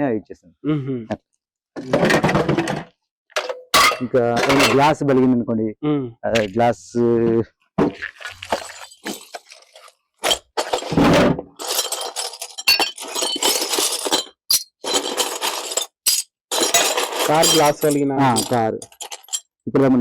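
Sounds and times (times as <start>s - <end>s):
glass shattering and tinkling: 8.5s - 10.9s, 11.6s - 19.5s.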